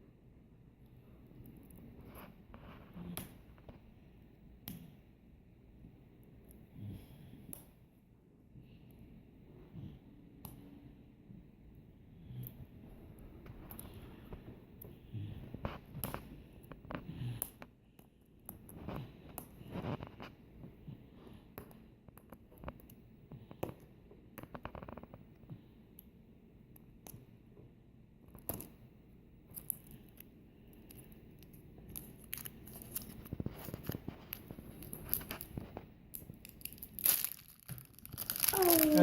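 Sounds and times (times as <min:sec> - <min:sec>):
hands opening plastic egg: 0:29.5 - 0:39.0.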